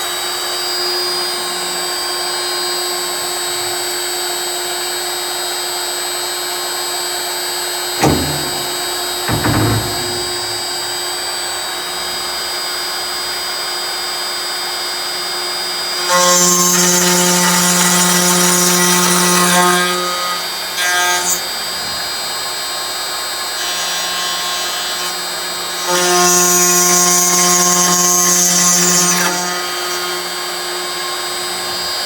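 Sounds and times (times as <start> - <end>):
tool cutting aluminium: 8.0 - 11.0.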